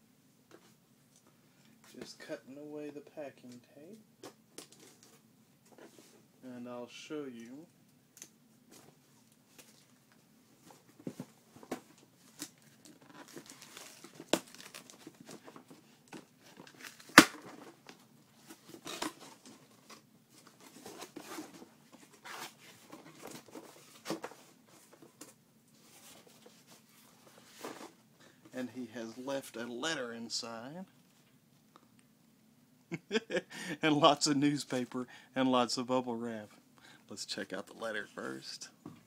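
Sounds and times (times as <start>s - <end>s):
cardboard and paper rustling: 10.6s - 28.0s
packing tape tearing: 12.3s - 15.4s, 16.6s - 17.6s.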